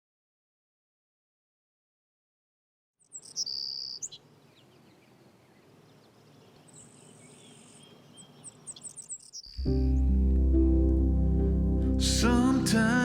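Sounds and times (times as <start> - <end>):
high bird trill: 3.0 - 9.7
birds chirping: 3.0 - 10.1
faint outdoor ambience: 3.0 - 13.0.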